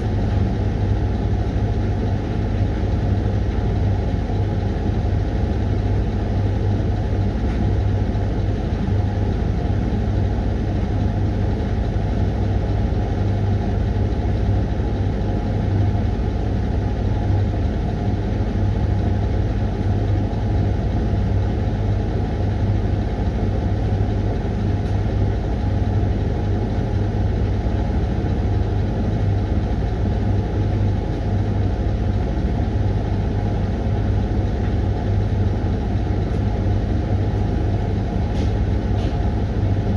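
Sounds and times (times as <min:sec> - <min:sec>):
washing machine humming: 0:00.0 - 0:39.9.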